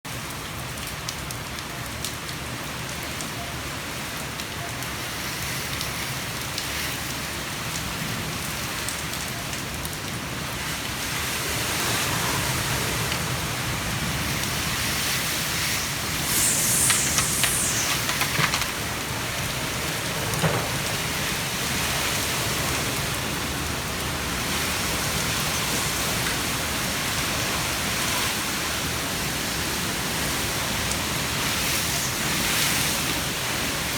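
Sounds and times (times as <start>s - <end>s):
wind: 0.0s - 33.9s
heavy rain: 0.1s - 33.9s.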